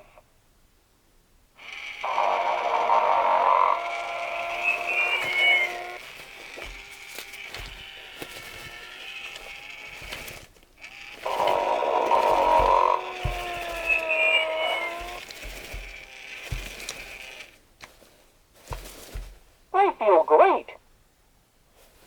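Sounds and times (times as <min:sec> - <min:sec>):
toy snoring through small speaker: 0:01.6 - 0:06.0, 0:11.2 - 0:15.2.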